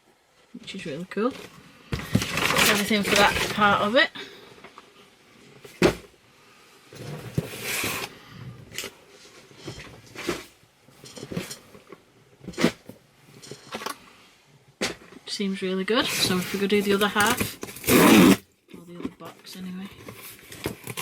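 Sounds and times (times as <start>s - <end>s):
cardboard box knocks and thuds: 5.7s - 6.1s.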